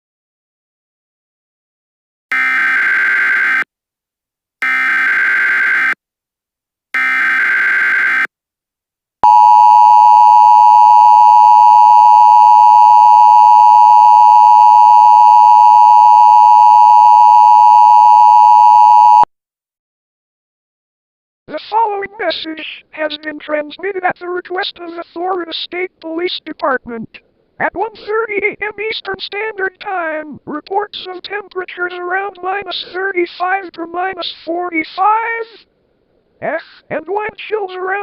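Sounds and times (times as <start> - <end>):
loud steady attention tone: 9.2 - 19.2
data tone bursts: 9.2 - 19.3.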